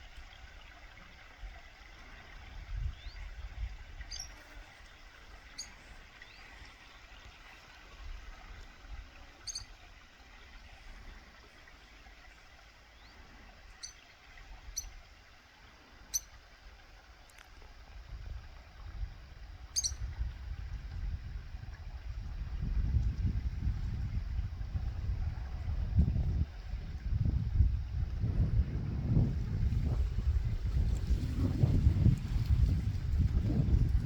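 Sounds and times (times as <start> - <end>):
bird chirping: 9.4 - 9.7, 19.8 - 20.0.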